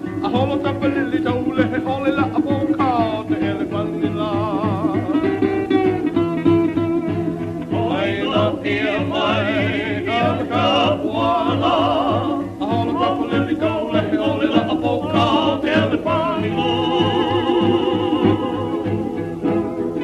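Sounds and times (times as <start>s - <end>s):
person singing with vibrato: 7.7s - 19.5s.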